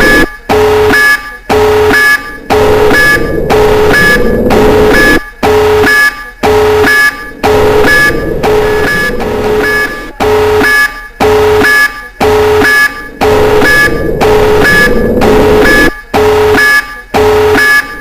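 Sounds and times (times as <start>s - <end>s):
electronic alarm buzzer: 0.0s - 18.0s.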